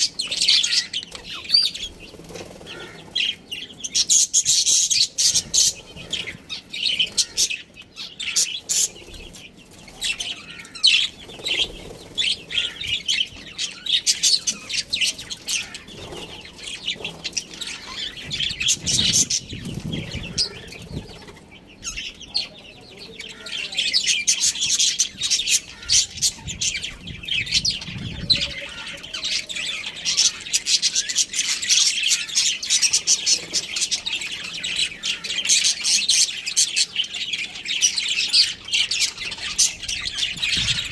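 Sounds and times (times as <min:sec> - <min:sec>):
budgerigars chirping: 0:00.0 - 0:40.9.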